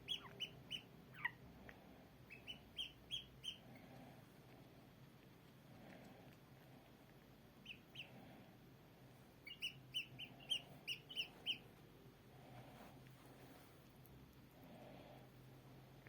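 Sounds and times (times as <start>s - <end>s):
bird chirping: 0.0s - 1.4s, 2.3s - 3.6s, 7.6s - 8.1s, 9.4s - 11.7s.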